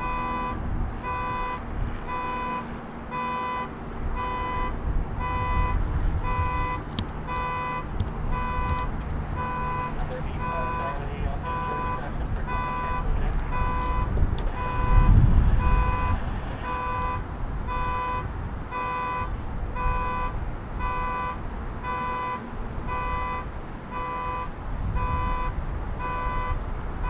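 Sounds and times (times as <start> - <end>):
car alarm horn honking: 0.0 - 27.0
jet takeoff noise: 8.7 - 17.0.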